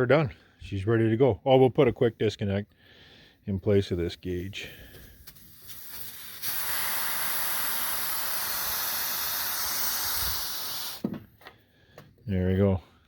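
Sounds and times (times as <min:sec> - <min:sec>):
compressed air hissing: 0:04.6 - 0:11.1.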